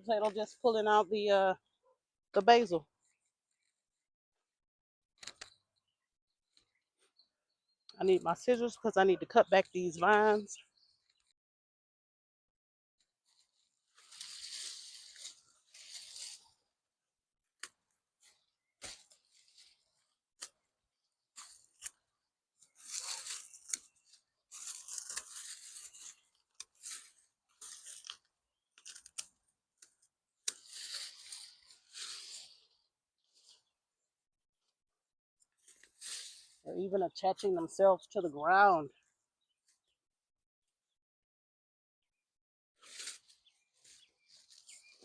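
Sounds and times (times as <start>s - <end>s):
vines and leaves rustling and tearing: 13.2s - 16.8s, 18.2s - 20.6s, 22.6s - 33.7s, 35.6s - 36.6s, 42.8s - 45.0s.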